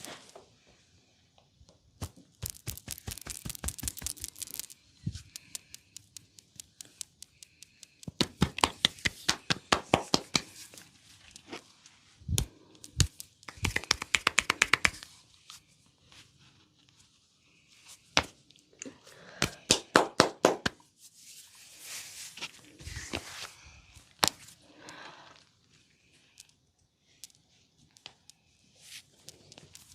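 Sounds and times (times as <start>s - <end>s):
hand slaps on skin: 8.1s - 10.6s, 12.3s - 15.0s.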